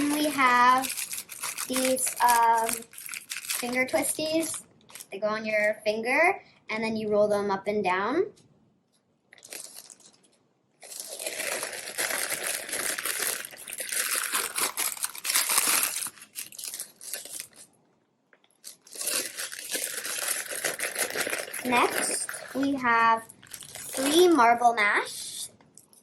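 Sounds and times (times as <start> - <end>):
plastic packaging crinkling: 0.0 - 5.8, 9.3 - 17.8, 18.4 - 24.6.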